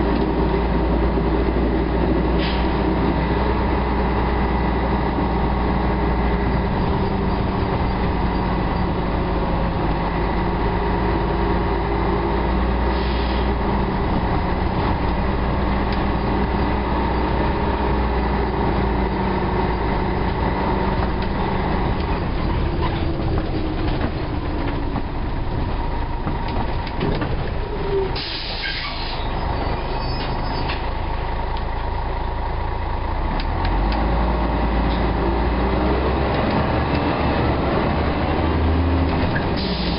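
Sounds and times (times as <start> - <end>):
diesel bus engine running: 0.0 - 39.9
air hiss: 28.2 - 29.3, 39.6 - 39.9.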